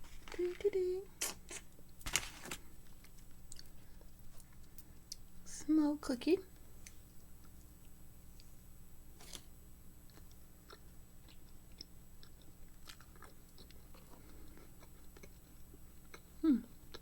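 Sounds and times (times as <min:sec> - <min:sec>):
person chewing cookie: 0:01.1 - 0:05.4, 0:09.2 - 0:17.0.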